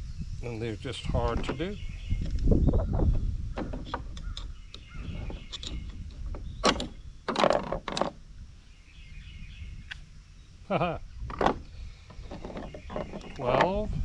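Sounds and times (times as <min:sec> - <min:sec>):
metal sockets clicking and clinking: 0:05.5 - 0:08.1.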